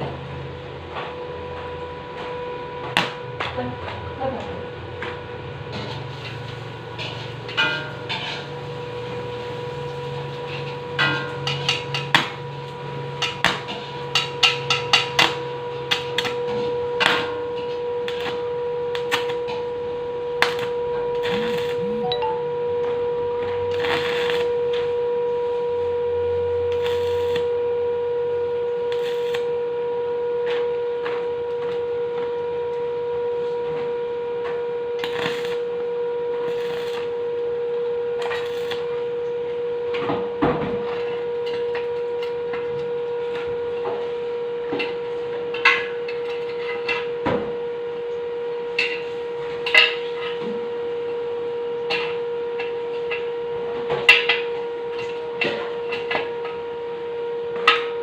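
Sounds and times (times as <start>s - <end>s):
welding machine humming: 0.0s - 58.0s.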